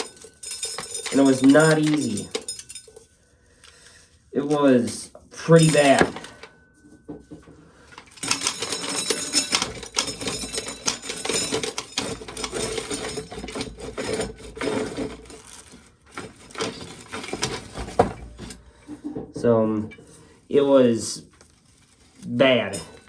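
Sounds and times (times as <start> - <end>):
hand-cranked corn sheller running: 0.0 - 3.0, 4.5 - 6.4, 7.9 - 18.6
kernels rattling into a pail: 0.0 - 6.5, 7.8 - 18.6, 21.1 - 23.0.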